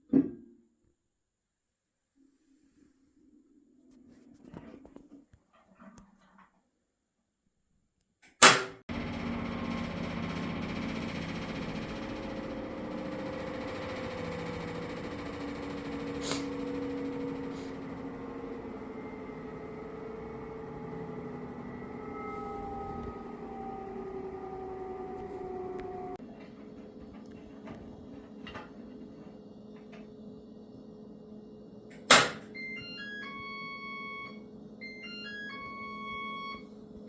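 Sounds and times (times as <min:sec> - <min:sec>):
washing machine humming and whining: 0:08.4 - 0:37.0.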